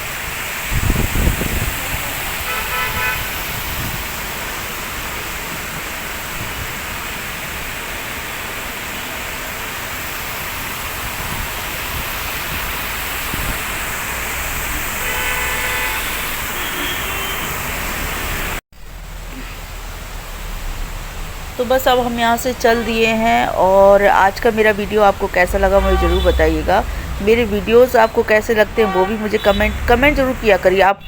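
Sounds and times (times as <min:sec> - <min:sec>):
road traffic noise: 0:00.0 - 0:31.0
vehicle horn honking: 0:02.4 - 0:03.4, 0:14.9 - 0:18.6, 0:25.5 - 0:27.2, 0:28.6 - 0:30.5.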